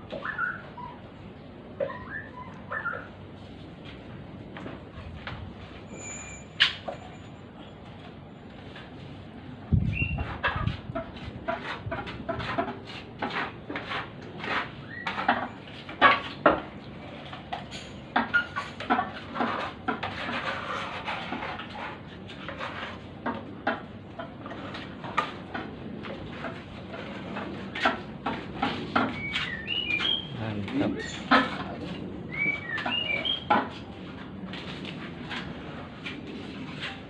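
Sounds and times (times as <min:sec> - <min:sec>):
hard objects tapping and scraping: 0:10.1 - 0:37.0.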